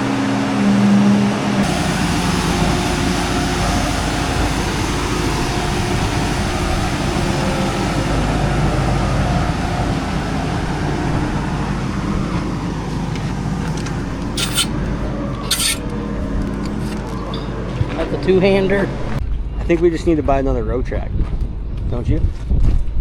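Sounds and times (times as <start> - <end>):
diesel farm machine engine: 1.6 - 17.8.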